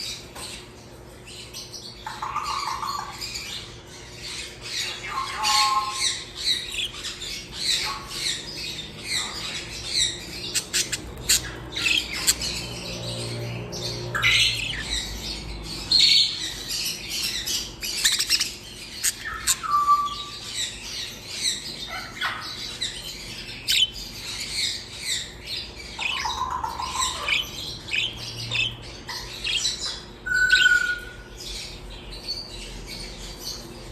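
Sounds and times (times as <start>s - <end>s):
small birds chirping and squawking: 0.0s - 33.9s.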